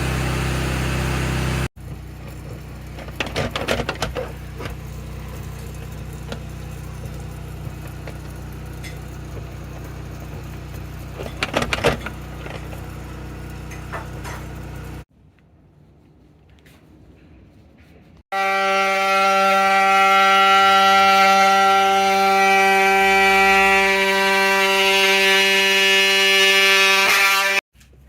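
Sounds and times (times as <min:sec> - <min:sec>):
power washer humming: 0:00.0 - 0:15.1, 0:18.3 - 0:27.6
knocking and clatter: 0:01.8 - 0:12.9.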